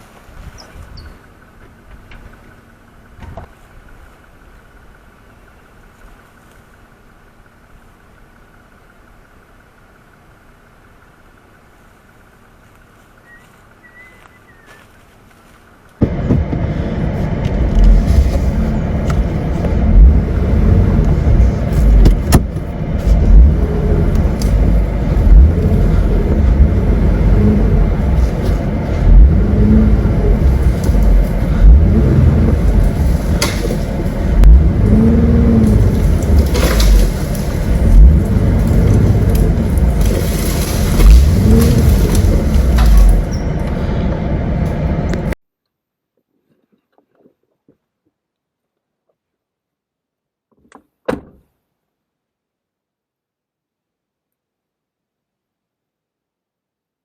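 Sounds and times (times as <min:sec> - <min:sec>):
engine revving over low rumble: 0:16.0 - 0:45.4.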